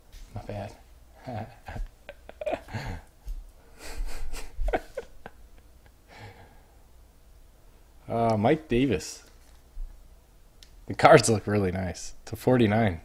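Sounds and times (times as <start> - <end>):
breathing: 6.1 - 6.8.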